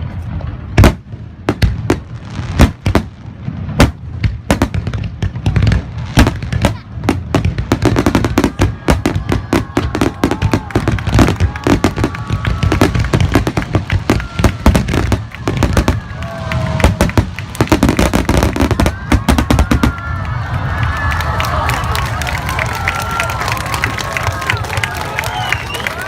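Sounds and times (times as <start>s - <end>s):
fireworks banging: 0.0s - 20.4s.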